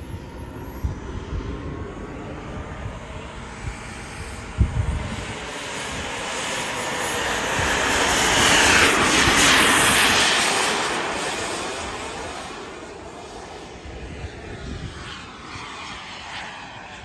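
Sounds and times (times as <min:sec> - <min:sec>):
model jet whooshing past: 0:00.0 - 0:17.0.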